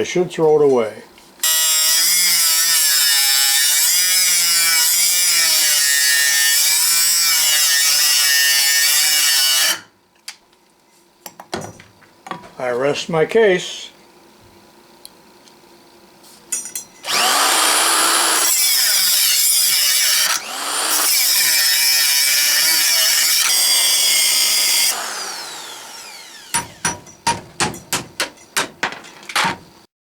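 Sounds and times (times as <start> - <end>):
grinder cutting steel: 1.4 - 9.9, 17.0 - 27.2.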